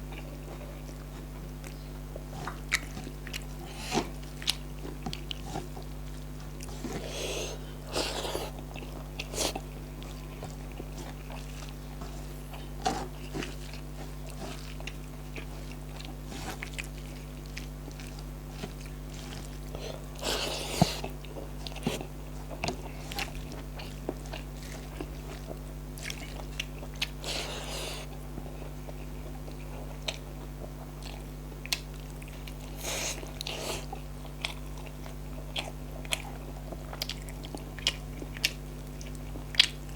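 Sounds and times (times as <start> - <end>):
low electrical hum: 0.0 - 39.9
person chewing: 0.1 - 39.9.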